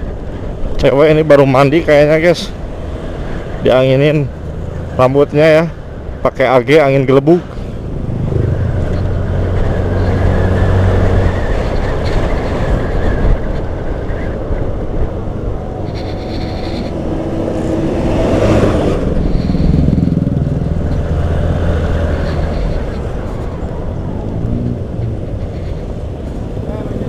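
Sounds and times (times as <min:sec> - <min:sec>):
wind and road noise: 0:00.0 - 0:27.0
motorcycle engine running: 0:19.0 - 0:22.8.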